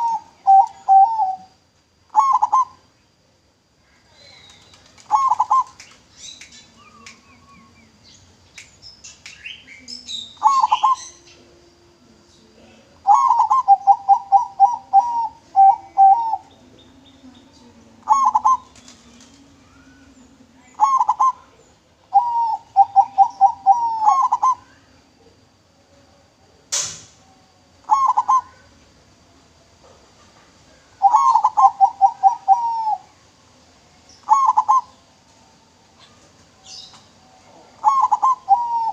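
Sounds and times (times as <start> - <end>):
dove cooing: 0.0 - 2.8, 4.2 - 5.8, 10.4 - 11.6, 12.6 - 17.1, 17.7 - 25.4, 27.8 - 28.8, 30.9 - 33.2, 34.2 - 35.0, 37.4 - 38.9
small birds chirping: 0.0 - 3.2, 3.8 - 11.5, 12.4 - 25.2, 30.6 - 33.2, 34.0 - 35.1, 35.9 - 38.9.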